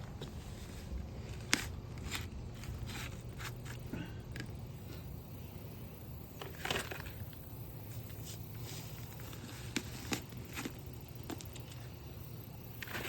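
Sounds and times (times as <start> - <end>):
digging scrapes in dirt: 0.2 - 4.1, 12.8 - 13.0.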